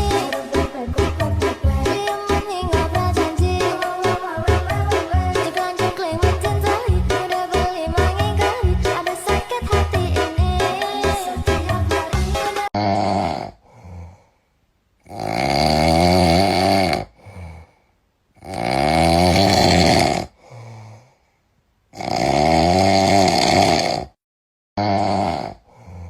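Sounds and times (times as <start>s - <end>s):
person snoring loudly: 0.0s - 9.8s, 12.2s - 14.3s, 15.0s - 17.8s, 18.4s - 21.0s, 21.9s - 24.2s, 24.8s - 26.0s
quiet breath out: 13.6s - 14.6s, 17.1s - 18.0s, 20.4s - 21.5s, 25.6s - 26.0s.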